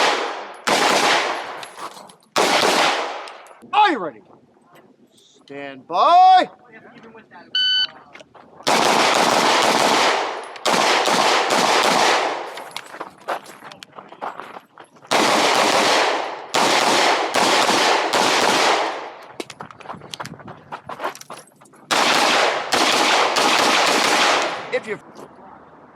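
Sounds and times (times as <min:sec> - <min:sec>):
pistol firing rapid shots: 0:00.0 - 0:01.6, 0:02.4 - 0:03.3, 0:08.6 - 0:12.5, 0:15.1 - 0:19.2, 0:21.9 - 0:24.7
start beep: 0:07.5 - 0:08.0.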